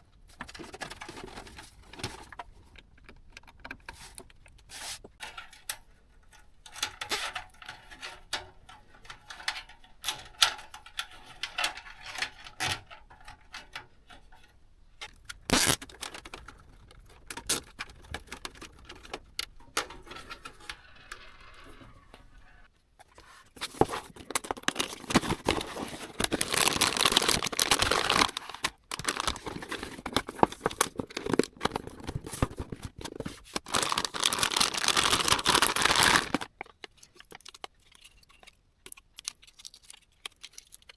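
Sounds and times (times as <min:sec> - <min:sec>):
crinkling and tearing: 0:15.1 - 0:19.5, 0:23.6 - 0:40.9.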